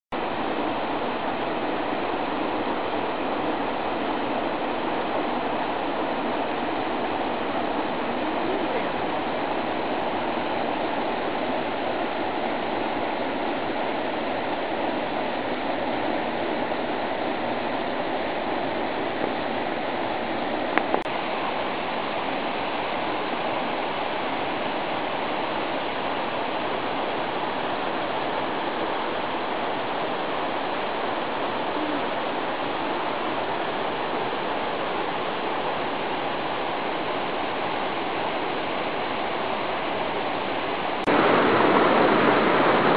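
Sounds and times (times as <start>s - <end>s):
waterfall rushing: 0.2s - 42.9s.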